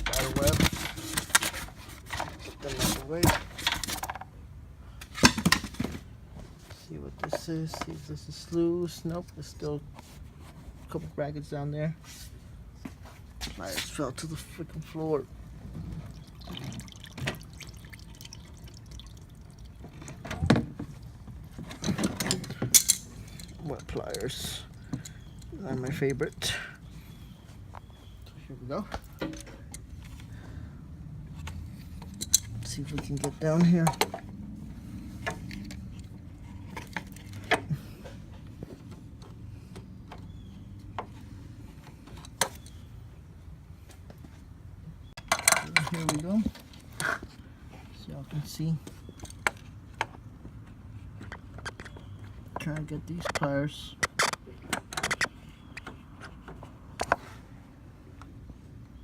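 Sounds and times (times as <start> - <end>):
coolant dripping into a pan: 16.0 - 20.2.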